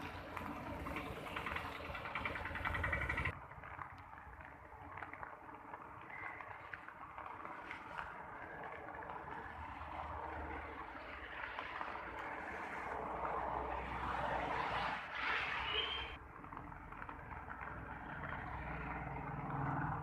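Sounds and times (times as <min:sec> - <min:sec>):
tyres hissing on wet road: 0:00.0 - 0:20.0
vehicle passing: 0:07.2 - 0:20.0.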